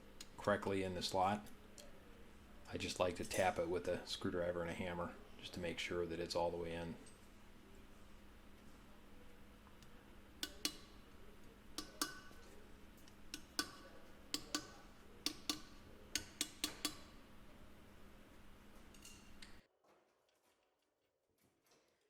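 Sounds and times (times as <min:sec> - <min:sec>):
hammer tapping on screwdriver: 0:10.4 - 0:11.0, 0:11.8 - 0:12.5, 0:13.3 - 0:17.2.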